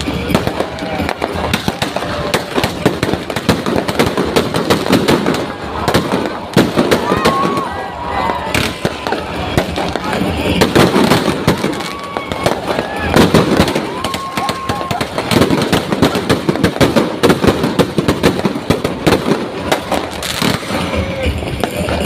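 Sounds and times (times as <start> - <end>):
fireworks crackling bangs: 0.0 - 22.0
voices: 5.2 - 16.8, 19.6 - 22.0.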